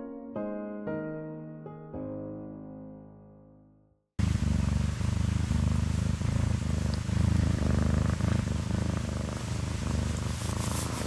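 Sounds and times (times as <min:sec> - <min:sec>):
cat purring loudly: 0:04.2 - 0:11.0.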